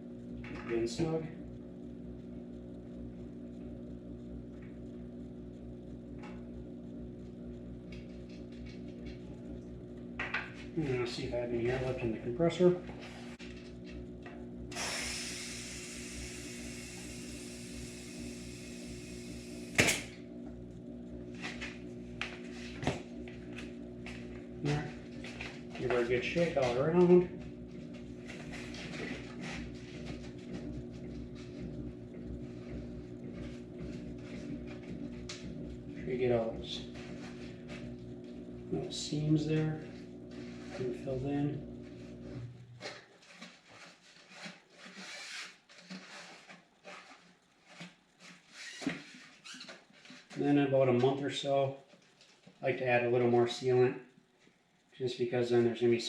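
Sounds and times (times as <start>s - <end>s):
low mechanical hum: 0.0s - 56.0s.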